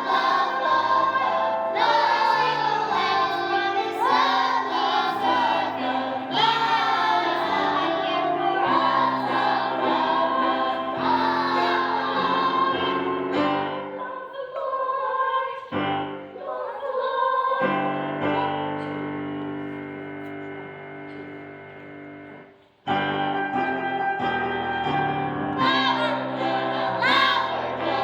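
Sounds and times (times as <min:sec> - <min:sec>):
musical accompaniment: 0:00.0 - 0:14.0, 0:17.7 - 0:28.0
children's choir singing: 0:00.0 - 0:18.9, 0:25.5 - 0:28.0.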